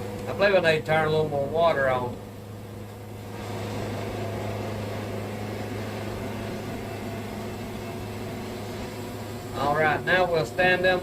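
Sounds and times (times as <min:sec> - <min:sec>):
band sawmill cutting log: 0:03.3 - 0:11.0.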